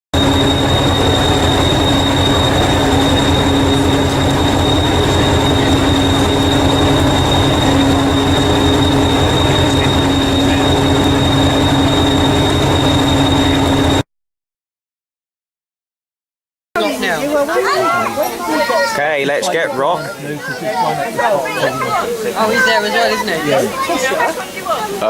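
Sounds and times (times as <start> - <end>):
train running: 0.1 - 14.0, 16.8 - 25.0
high-pitched whine: 0.2 - 14.0
low hum: 0.2 - 14.0.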